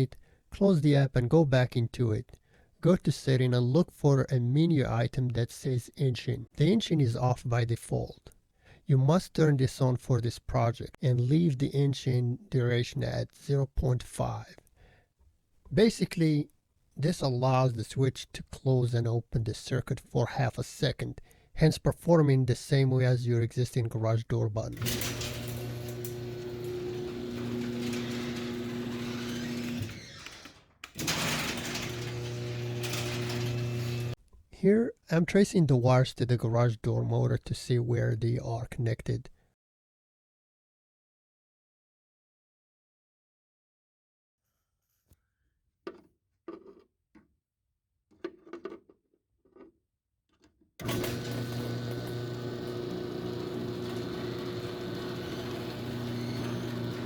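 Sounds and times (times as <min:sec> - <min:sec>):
garage door opener motor humming: 0:24.8 - 0:34.2, 0:50.8 - 0:57.0
knocks and rustles: 0:45.9 - 0:47.3.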